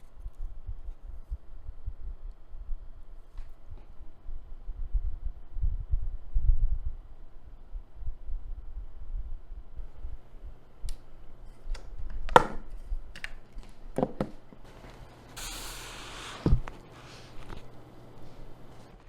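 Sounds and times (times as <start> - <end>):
short spray hiss: 15.4 - 17.4.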